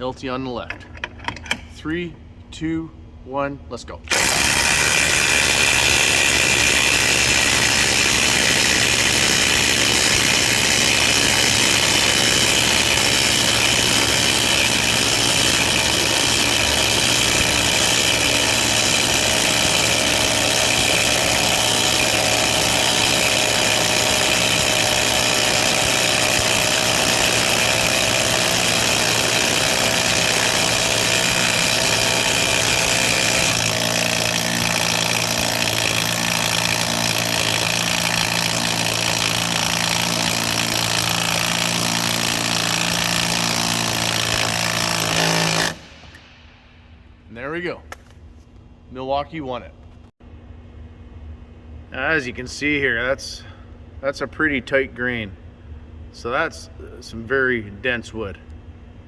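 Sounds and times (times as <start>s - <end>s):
impact drivers hammering: 4.1s - 46.3s.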